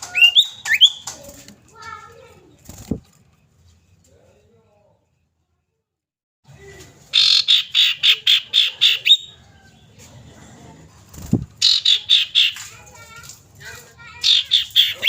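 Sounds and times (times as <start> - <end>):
bird calling sharp high notes: 11.6 - 12.6.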